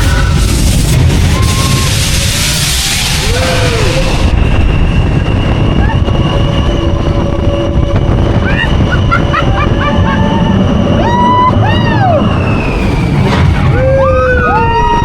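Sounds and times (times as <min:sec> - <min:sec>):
high shrieks: 0:00.0 - 0:07.8
ride vehicle rumbling on track: 0:00.0 - 0:15.0.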